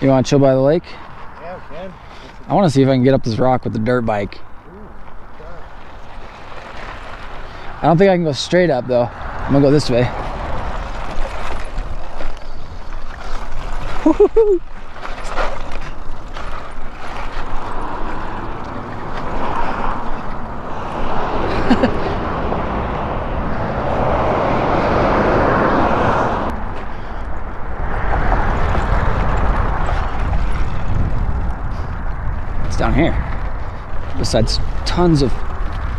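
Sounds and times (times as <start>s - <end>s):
tyres crunching on dirt: 0.0s - 24.8s, 26.5s - 35.9s
wind rumble on microphone: 8.8s - 35.9s.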